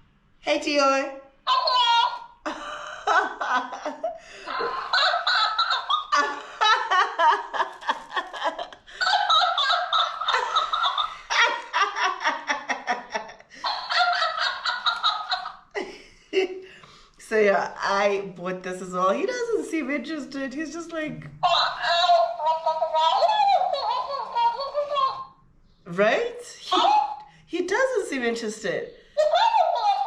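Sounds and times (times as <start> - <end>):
high-pitched laughter: 1.5 - 16.6, 21.4 - 25.4, 29.2 - 30.0.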